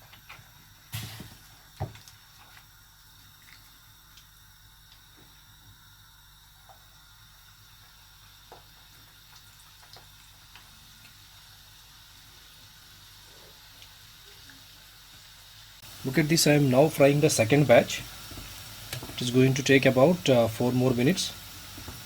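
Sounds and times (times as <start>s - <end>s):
hot oil sizzling: 0.0s - 2.0s, 6.7s - 22.0s.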